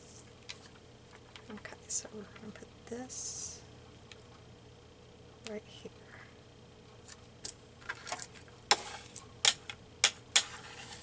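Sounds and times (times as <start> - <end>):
paper rustling: 10.4 - 11.0.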